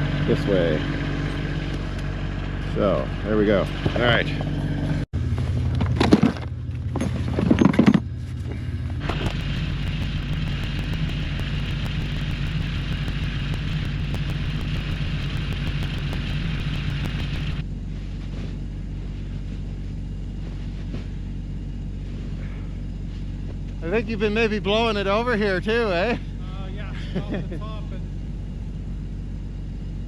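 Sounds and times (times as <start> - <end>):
tractor engine idling: 8.0 - 17.7.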